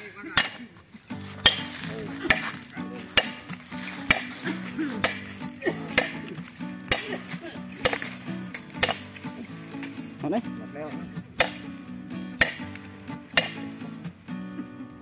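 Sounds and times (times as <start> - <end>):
hot metal sizzling in wood: 1.1 - 14.4
hammer striking iron pegs: 1.4 - 1.7, 3.1 - 3.5, 8.8 - 9.1, 11.4 - 11.7, 12.4 - 12.8, 13.4 - 13.6.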